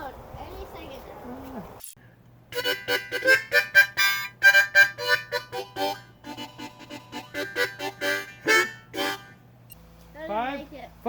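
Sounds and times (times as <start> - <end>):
lively instrumental music: 2.5 - 9.4.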